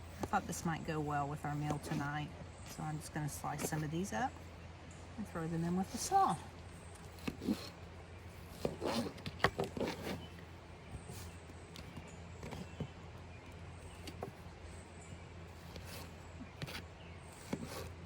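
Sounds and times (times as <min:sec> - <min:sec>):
steady low hum: 0:00.0 - 0:18.0
knife slicing fruit: 0:15.6 - 0:18.0.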